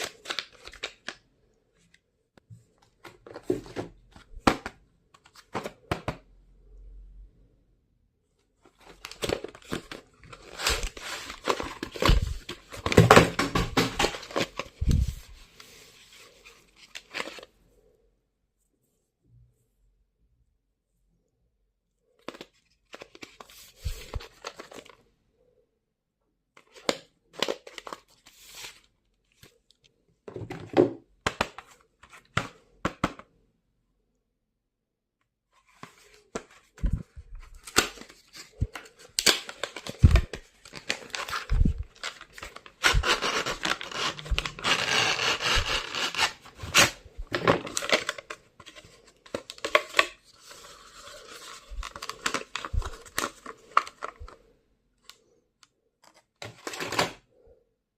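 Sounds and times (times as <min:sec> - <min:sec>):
packaging tearing and crinkling: 0:37.6 - 0:48.7, 0:49.3 - 0:54.3.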